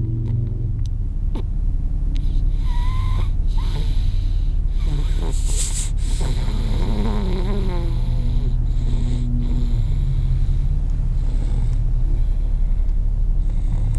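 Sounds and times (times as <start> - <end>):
child snoring loudly: 2.5 - 12.5, 13.4 - 13.9.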